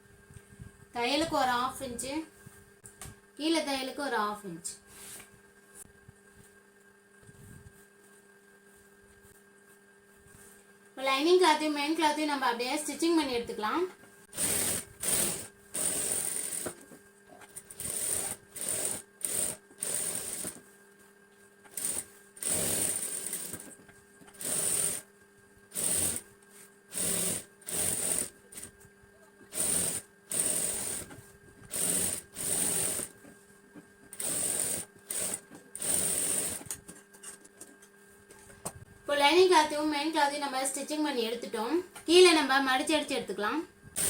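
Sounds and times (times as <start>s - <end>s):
sewing machine stitching: 14.3s - 16.8s, 17.6s - 20.6s, 21.7s - 25.1s, 25.7s - 26.3s, 26.9s - 28.7s, 29.5s - 33.2s, 34.2s - 36.8s.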